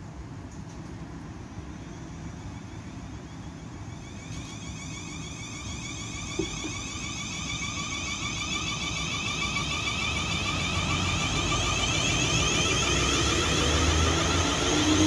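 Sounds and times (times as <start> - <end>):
high steady whine: 0.0 - 15.0
train rumbling: 5.5 - 15.0.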